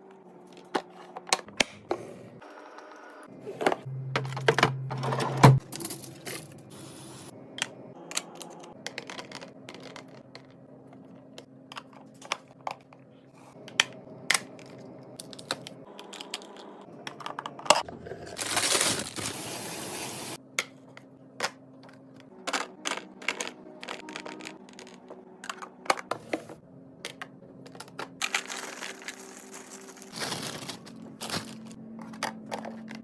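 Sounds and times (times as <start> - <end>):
packaging rustling: 18.4 - 19.5, 28.2 - 31.8.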